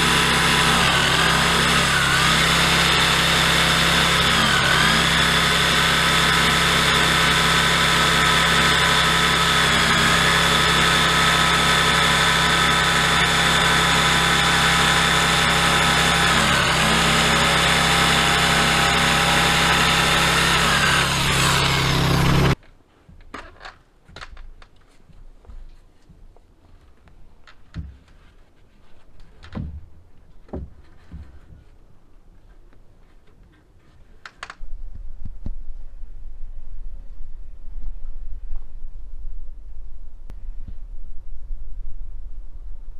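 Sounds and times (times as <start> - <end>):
small engine running at high speed: 0.0 - 22.6.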